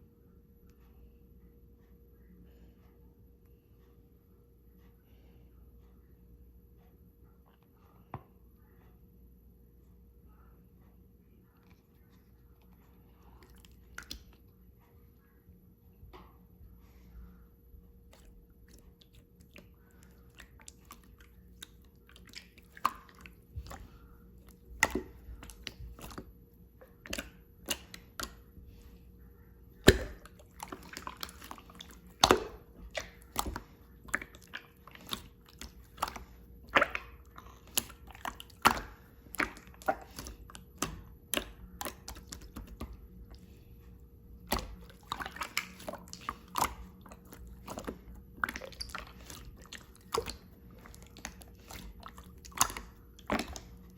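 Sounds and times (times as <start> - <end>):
slime squelching and popping: 13.4 - 14.5, 18.0 - 53.9.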